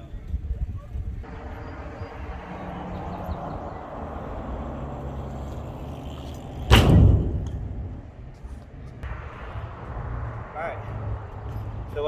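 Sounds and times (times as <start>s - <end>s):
bike tyres rumbling: 1.0s - 12.0s
bike landing impact: 5.9s - 8.6s.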